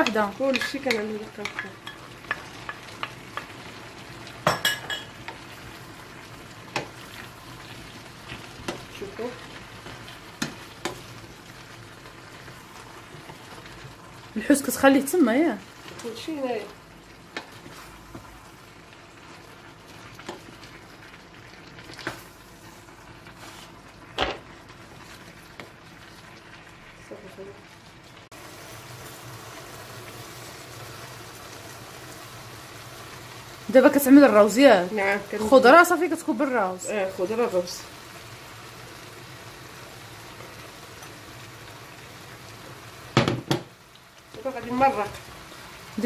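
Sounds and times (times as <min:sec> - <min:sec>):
vegetables sizzling: 0:00.0 - 0:46.0.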